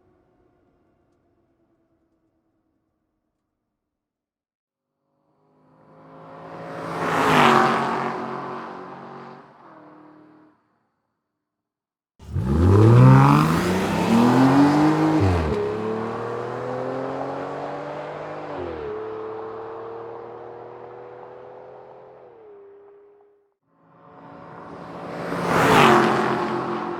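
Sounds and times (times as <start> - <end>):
car passing by: 5.8 - 10.5, 12.2 - 21.5, 24.0 - 26.9
car engine revving: 12.2 - 22.9.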